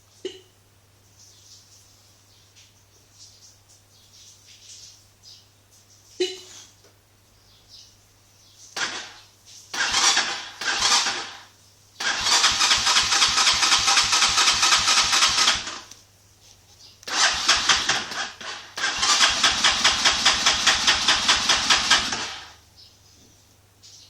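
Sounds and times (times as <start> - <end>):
dirt bike starter cranking: 8.8 - 9.2, 9.8 - 15.9, 17.1 - 22.6.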